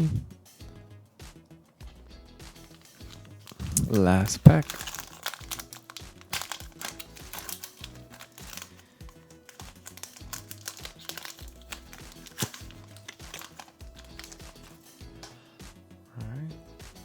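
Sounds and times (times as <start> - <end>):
background music: 0.0 - 17.0
foil wrapper crinkling: 2.6 - 14.9
cards clicking and flicking: 2.6 - 15.4.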